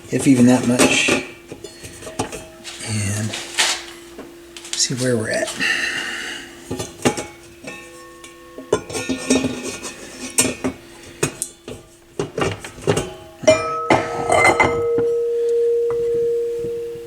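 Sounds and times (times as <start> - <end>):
higher steady tone: 13.4 - 17.0
steady low tone: 13.4 - 17.0.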